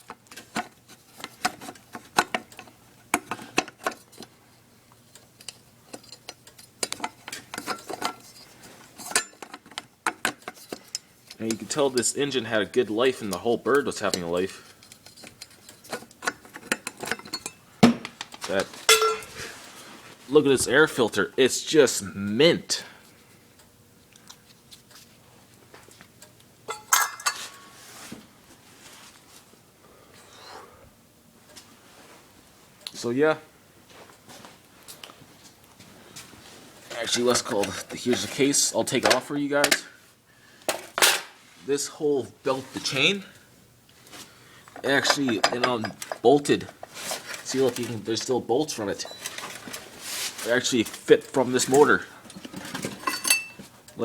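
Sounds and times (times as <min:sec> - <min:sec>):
metallic clatter with ringing: 0:18.9 - 0:19.3
small metal parts clinking: 0:26.7 - 0:27.7, 0:51.7 - 0:53.6.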